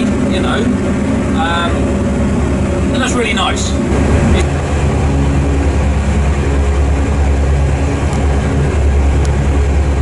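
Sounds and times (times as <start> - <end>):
diesel engine droning: 0.0 - 10.0.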